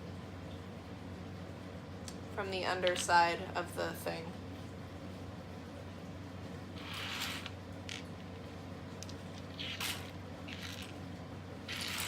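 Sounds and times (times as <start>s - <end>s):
steady low hum: 0.0s - 12.0s
plastic pieces scraping and clicking: 11.7s - 12.0s.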